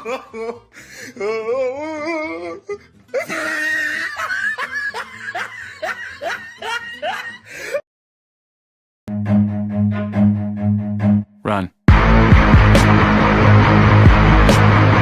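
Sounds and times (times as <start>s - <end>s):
person laughing hard: 0.0s - 2.4s, 3.1s - 7.8s.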